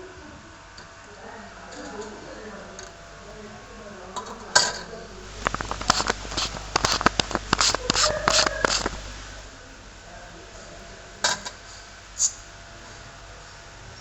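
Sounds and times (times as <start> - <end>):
small hard clicks and taps: 5.3 - 9.1.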